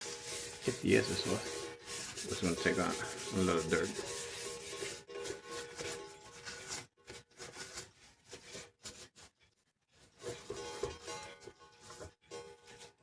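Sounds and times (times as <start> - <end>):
brush scrubbing: 0.0 - 9.4.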